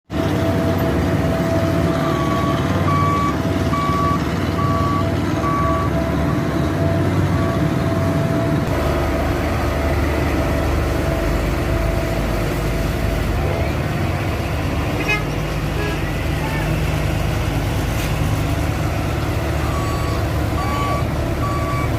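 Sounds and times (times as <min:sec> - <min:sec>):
road roller engine running: 0:00.1 - 0:21.9
reversing alarm beeping: 0:02.0 - 0:06.4, 0:19.6 - 0:21.9.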